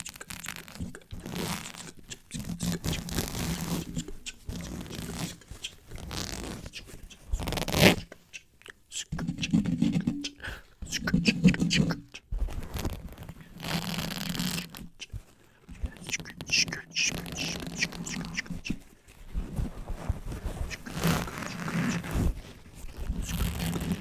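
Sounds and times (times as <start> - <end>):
brushing on microphone: 0.0 - 8.3, 11.0 - 24.0
lip and tongue clicks: 3.8 - 5.8.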